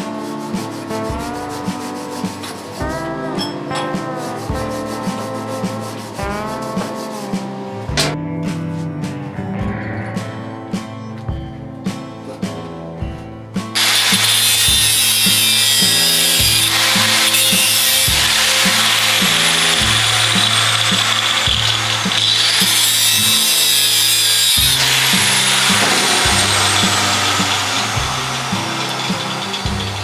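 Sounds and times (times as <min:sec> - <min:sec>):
power tool grinding metal: 0:00.0 - 0:07.1, 0:13.8 - 0:30.0
background music: 0:00.0 - 0:30.0.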